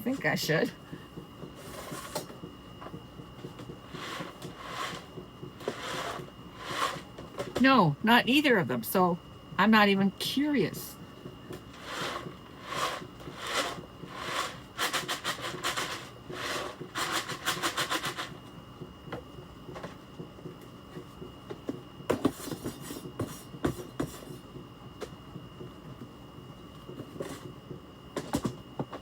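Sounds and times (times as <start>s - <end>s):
thin steady high whine: 0.0s - 29.0s
rhythmic rubbing strokes: 3.9s - 7.1s, 11.7s - 18.1s.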